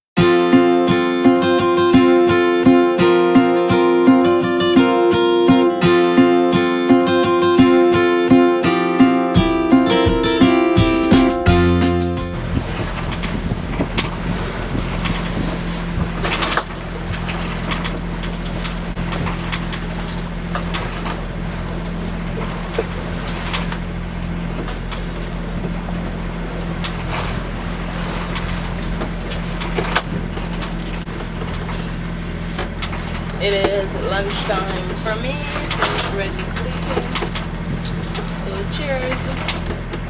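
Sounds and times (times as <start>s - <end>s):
boat engine low hum: 0.2s - 40.0s
wind: 12.3s - 40.0s.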